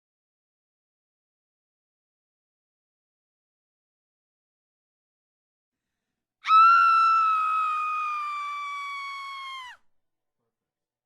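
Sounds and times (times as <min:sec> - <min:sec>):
high-pitched scream-like cry: 0:06.4 - 0:09.8.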